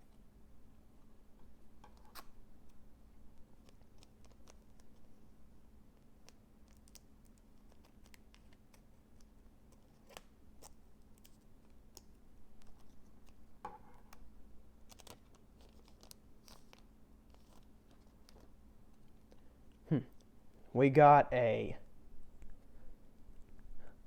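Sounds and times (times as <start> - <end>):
card pack rustle: 14.8 - 18.6.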